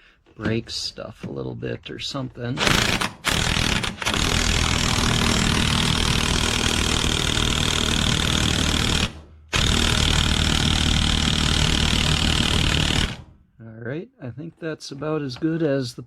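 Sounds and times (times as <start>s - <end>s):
impact wrench hammering: 2.6s - 13.4s.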